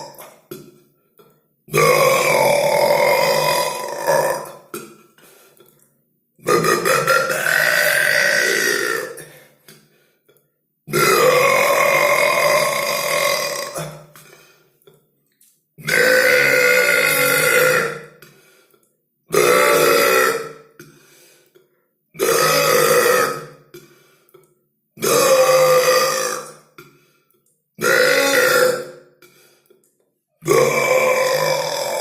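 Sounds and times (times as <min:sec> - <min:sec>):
person burping: 0:00.0 - 0:05.2, 0:06.4 - 0:09.5, 0:10.9 - 0:15.0, 0:15.8 - 0:18.3, 0:19.3 - 0:21.0, 0:22.1 - 0:27.0, 0:27.8 - 0:29.4, 0:30.4 - 0:32.0.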